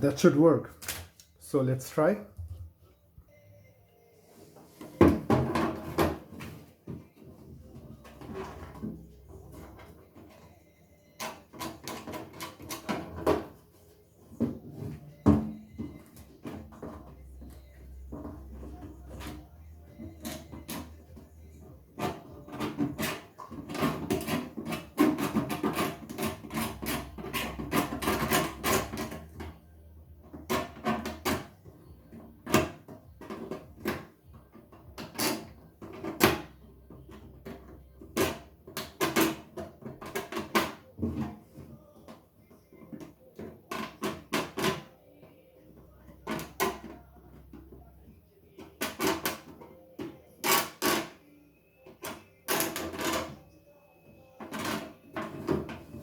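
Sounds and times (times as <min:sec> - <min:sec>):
knife scraping plastic: 0:22.0 - 0:29.6.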